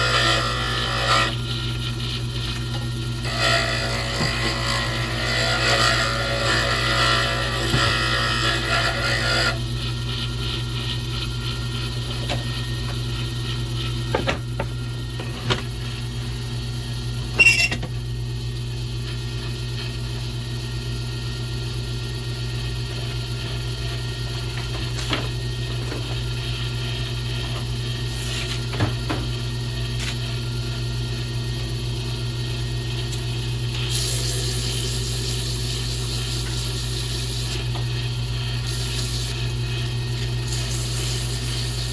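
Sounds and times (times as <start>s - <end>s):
wood lathe motor humming: 0.0s - 15.8s, 33.0s - 41.9s.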